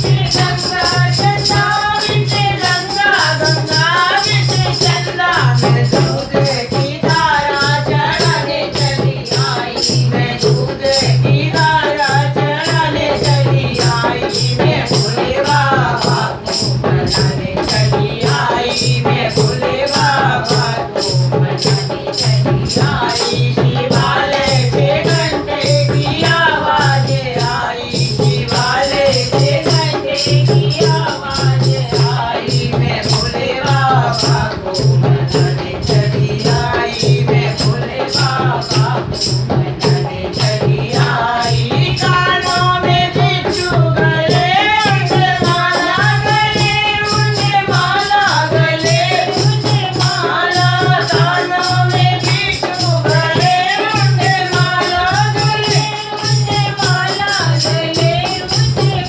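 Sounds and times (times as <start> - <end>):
woman singing devotional song: 0.0 - 59.0
shaker rattle: 44.3 - 59.0.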